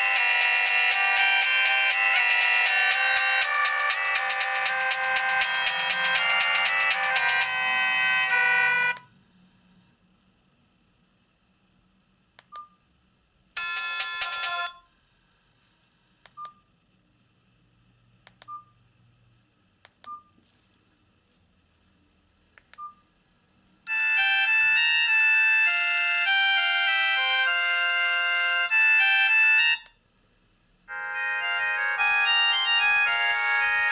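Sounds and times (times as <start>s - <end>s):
phone ringtone melody: 0.0s - 9.0s, 13.6s - 14.8s, 23.9s - 29.9s, 30.9s - 33.9s
keypad clicks with beeps: 12.4s - 12.8s, 16.3s - 16.6s, 18.3s - 18.8s, 19.9s - 20.4s, 22.6s - 23.0s.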